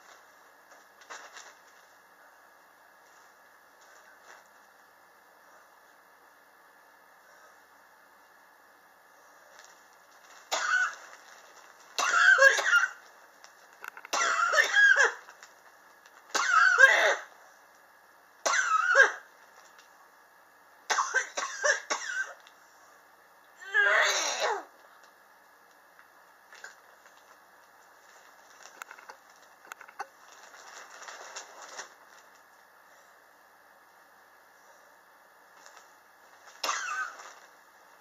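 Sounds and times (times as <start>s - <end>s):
person coughing: 14.1s - 15.2s, 20.9s - 22.4s, 36.6s - 37.2s.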